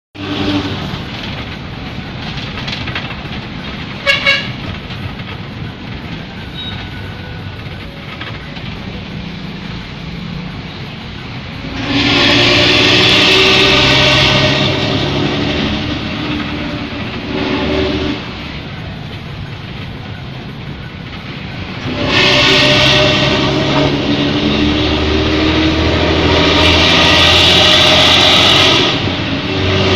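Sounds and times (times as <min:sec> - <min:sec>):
low vehicle engine rumble: 0:00.2 - 0:29.9
short horn toots: 0:04.0 - 0:04.6, 0:11.8 - 0:15.6, 0:21.9 - 0:29.2.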